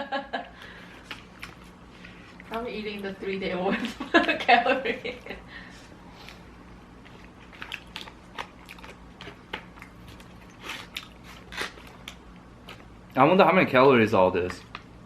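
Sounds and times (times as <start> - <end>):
chewing and biting food: 0.6 - 3.1, 6.1 - 13.2.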